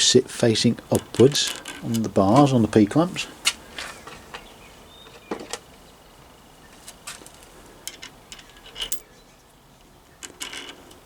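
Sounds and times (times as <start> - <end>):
small metal parts clinking: 7.9 - 9.1, 10.2 - 10.9.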